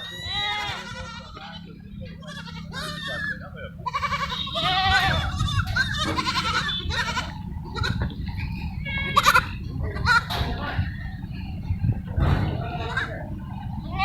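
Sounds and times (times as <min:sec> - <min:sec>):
goats bleating: 0:00.0 - 0:08.2, 0:08.8 - 0:10.3, 0:13.8 - 0:14.0.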